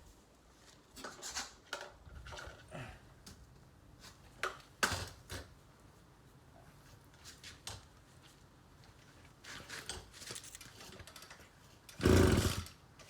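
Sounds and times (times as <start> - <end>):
recoil starter pull: 12.0 - 12.7
trimmer engine cranking: 12.0 - 12.7.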